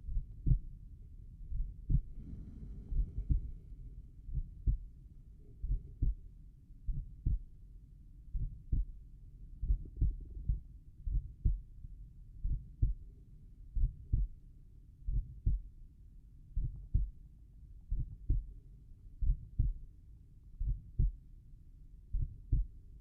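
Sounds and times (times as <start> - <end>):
heartbeat thumps: 0.0 - 0.7, 1.5 - 6.3, 6.9 - 7.6, 8.3 - 9.0, 9.6 - 11.7, 12.4 - 13.1, 13.8 - 14.4, 15.1 - 15.7, 16.6 - 17.2, 17.9 - 18.5, 19.2 - 19.9, 20.6 - 21.2, 22.1 - 22.8.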